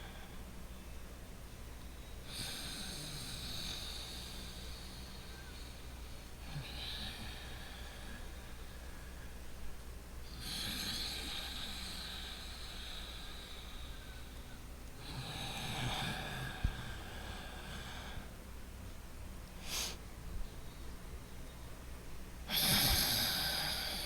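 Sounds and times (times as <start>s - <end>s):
man breathing through nose: 19.6s - 20.0s
sharp sniff: 19.6s - 20.0s.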